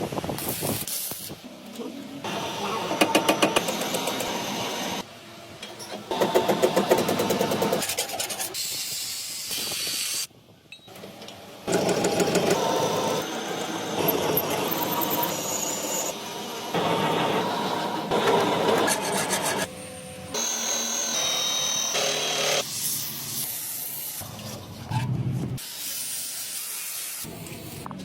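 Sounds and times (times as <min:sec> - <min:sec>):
harsh scraping of metalwork: 0:11.7 - 0:25.1.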